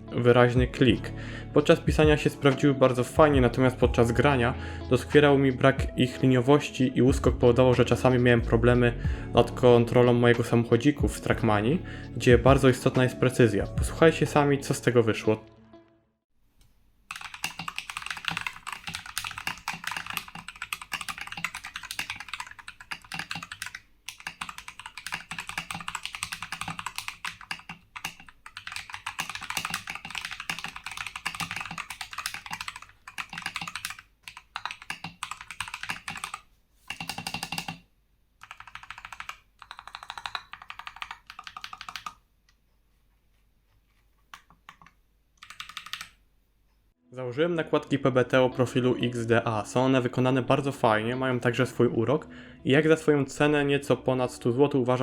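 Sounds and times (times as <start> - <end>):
mechanical keyboard typing: 17.1 - 37.8, 38.4 - 42.2, 44.3 - 46.2.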